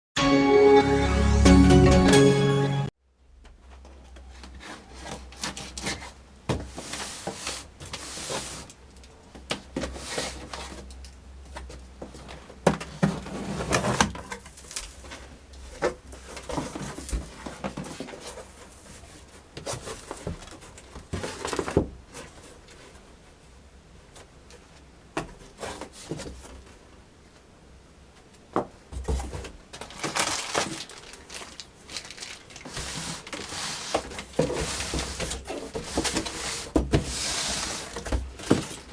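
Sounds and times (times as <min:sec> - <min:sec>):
cardboard box rubbing and rustling: 0:29.0 - 0:38.9.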